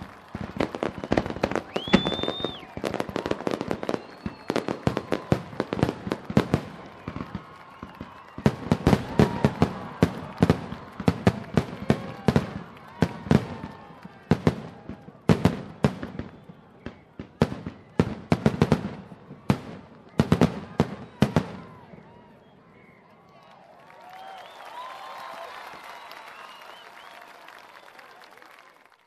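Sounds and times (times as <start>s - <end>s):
fireworks bangs and crackles: 0.0s - 22.8s
crowd cheering: 0.0s - 29.0s.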